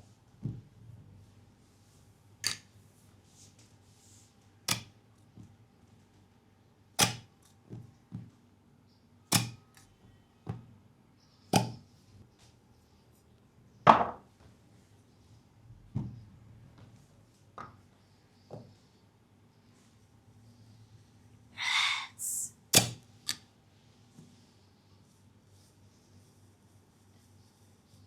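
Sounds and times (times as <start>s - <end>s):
slapping massage strikes: 4.7s - 5.0s, 7.0s - 7.3s, 9.3s - 9.7s, 11.6s - 11.8s.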